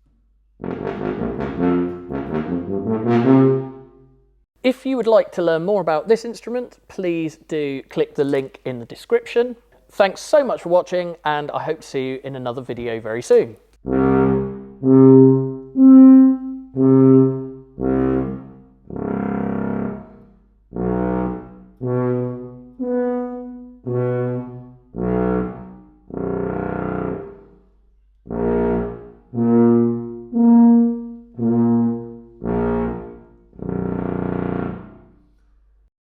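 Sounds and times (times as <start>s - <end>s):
tuba sustained low notes: 0.6s - 4.0s, 13.8s - 35.4s.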